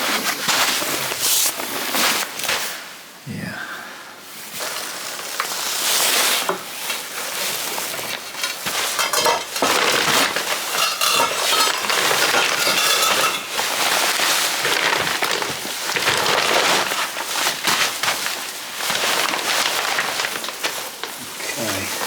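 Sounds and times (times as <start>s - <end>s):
metal and stone clinks: 8.4s - 13.8s.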